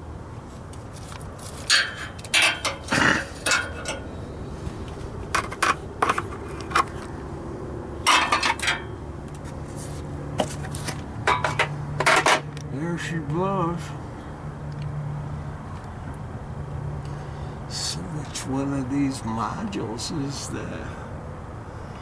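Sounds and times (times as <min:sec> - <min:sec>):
metal clinking and scraping: 0:00.9 - 0:04.1, 0:08.0 - 0:12.5.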